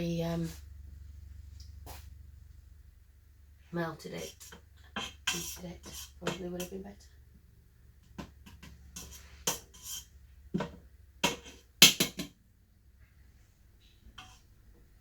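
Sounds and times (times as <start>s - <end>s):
utensil clinking against a pot: 4.2s - 6.8s, 8.0s - 12.3s.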